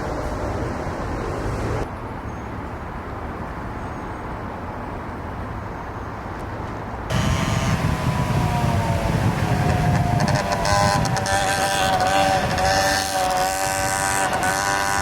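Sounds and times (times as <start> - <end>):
low traffic rumble: 0.0 - 15.0
vehicle engine running: 7.1 - 15.0.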